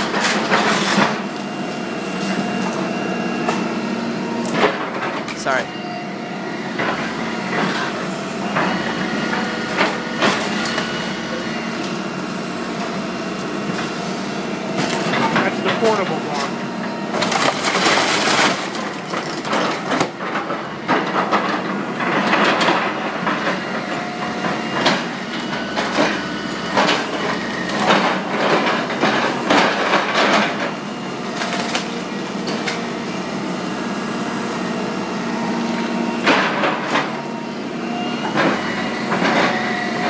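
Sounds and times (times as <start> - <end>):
debris crashing: 17.2 - 19.9.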